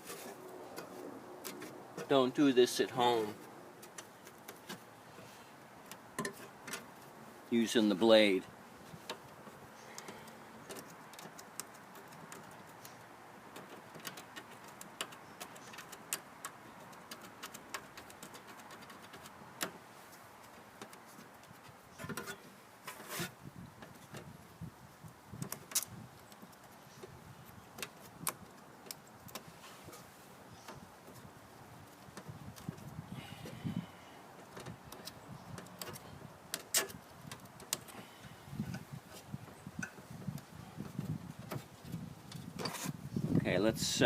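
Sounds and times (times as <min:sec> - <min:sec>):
metallic clicks and scrapes: 0:03.0 - 0:07.1, 0:08.8 - 0:24.3, 0:34.3 - 0:43.1.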